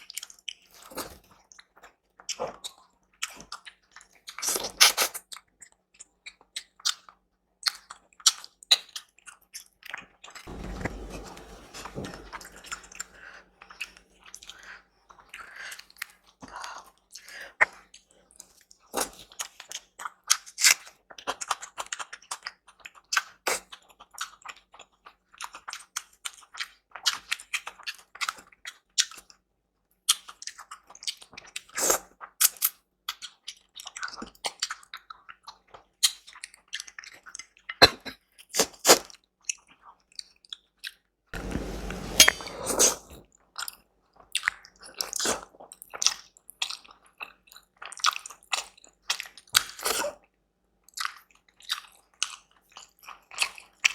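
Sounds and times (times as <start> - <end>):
chewing and crunchy bites: 0.0 - 10.0, 43.6 - 50.2, 50.8 - 53.9
steady noise: 10.5 - 14.1, 41.4 - 43.2.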